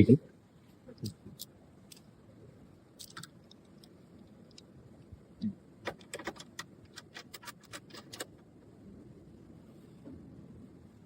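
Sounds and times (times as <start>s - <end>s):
hose connectors clicking and rattling: 3.0s - 4.7s.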